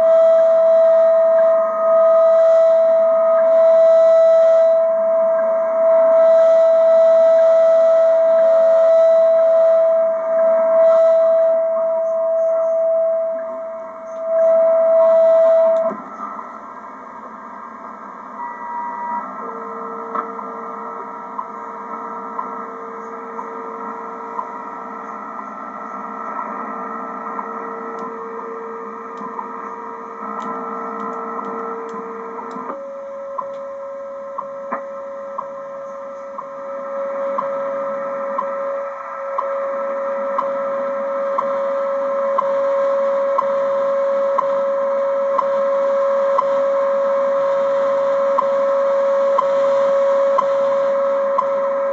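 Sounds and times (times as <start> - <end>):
steady audio tone: 0.0 - 51.9
time signal ticks: 14.1 - 16.0, 27.4 - 28.2, 30.2 - 36.6, 37.2 - 39.7, 40.3 - 40.6, 41.3 - 44.7, 45.3 - 46.6, 48.3 - 51.8
radio hiss: 35.0 - 51.9.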